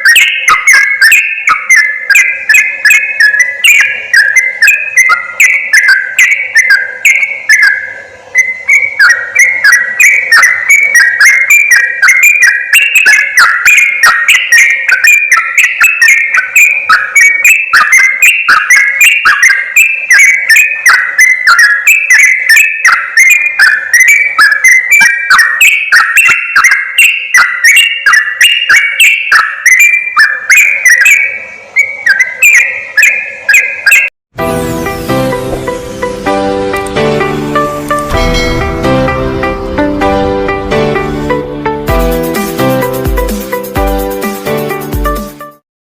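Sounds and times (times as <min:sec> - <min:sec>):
bird song bubbling chattering: 0:00.0 - 0:34.1
music: 0:34.4 - 0:45.6.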